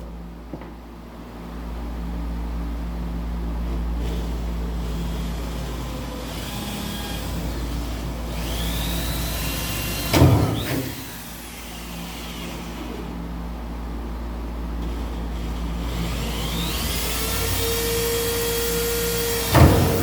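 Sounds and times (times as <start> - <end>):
power drill whining: 4.0 - 13.1, 14.8 - 20.0.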